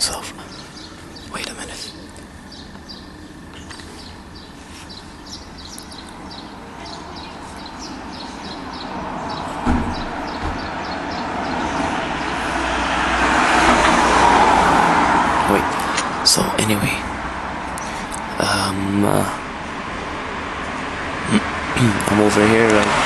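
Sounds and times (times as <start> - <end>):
road vehicle approaching: 0.0 - 23.0
low thump: 9.6 - 10.8.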